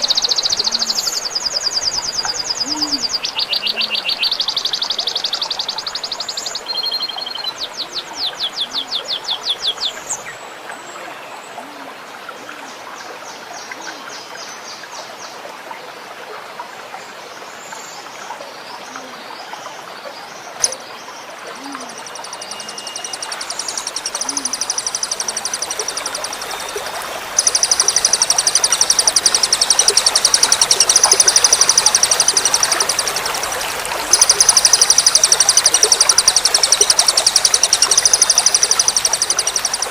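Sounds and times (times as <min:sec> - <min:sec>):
songbird trilling: 0:00.0 - 0:10.4, 0:20.6 - 0:20.9, 0:21.6 - 0:39.9
trickling water: 0:00.0 - 0:39.9.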